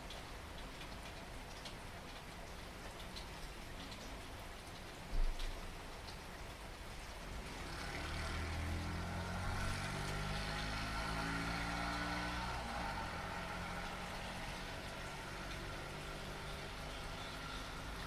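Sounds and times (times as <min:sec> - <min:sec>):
rain hissing: 0:06.9 - 0:18.0.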